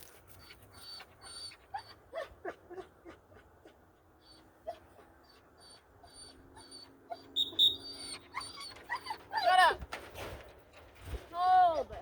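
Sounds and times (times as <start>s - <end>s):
dog whining: 0.4s - 3.2s, 4.2s - 9.8s.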